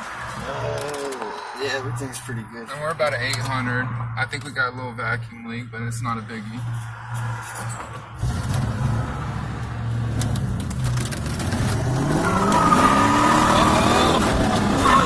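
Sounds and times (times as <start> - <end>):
car engine accelerating hard: 8.2 - 15.0.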